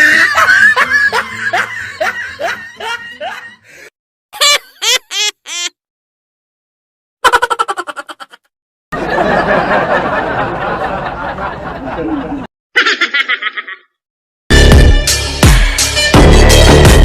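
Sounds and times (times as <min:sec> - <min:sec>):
snickering laugh: 0:00.0 - 0:03.6, 0:04.4 - 0:05.7, 0:07.2 - 0:14.0
high-pitched giggle: 0:07.2 - 0:08.5, 0:12.0 - 0:13.9
burst of laughter: 0:07.2 - 0:13.9.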